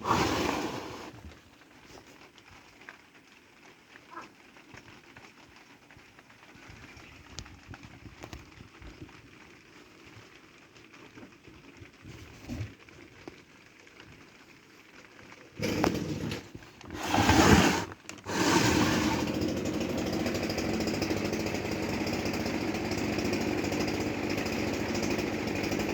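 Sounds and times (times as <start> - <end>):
well pump motor running: 0.0 - 1.4, 15.6 - 25.9.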